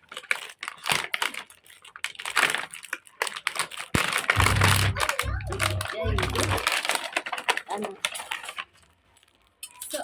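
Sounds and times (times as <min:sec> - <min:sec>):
packaging crinkling: 0:00.0 - 0:09.6
low hum: 0:04.4 - 0:06.6.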